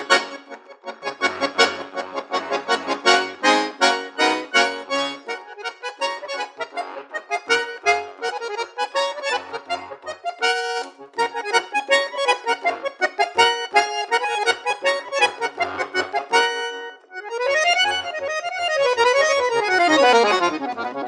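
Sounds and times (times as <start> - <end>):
accordion playing fast notes: 0.0 - 21.0.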